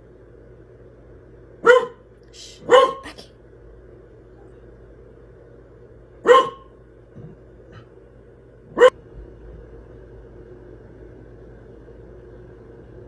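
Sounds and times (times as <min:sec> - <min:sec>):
dog barking: 0:01.6 - 0:03.2, 0:06.2 - 0:06.7, 0:08.7 - 0:09.0.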